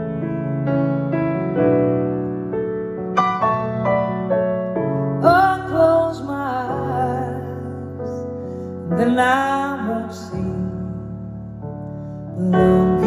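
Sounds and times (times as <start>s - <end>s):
piano ballad chords: 0.0s - 13.0s
woman singing: 5.2s - 8.2s, 8.9s - 11.2s, 12.4s - 13.0s.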